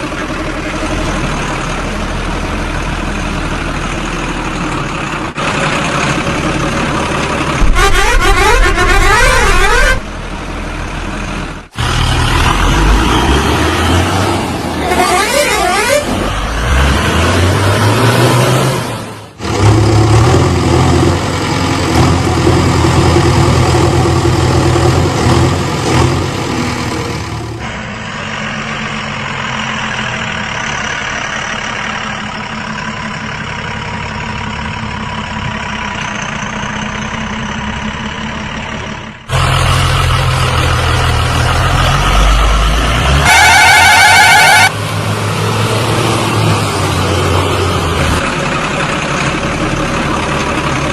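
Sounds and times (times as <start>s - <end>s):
heavy vehicle engine running: 0.0s - 50.9s
horn blast: 7.6s - 10.1s, 14.8s - 16.2s, 43.2s - 44.8s.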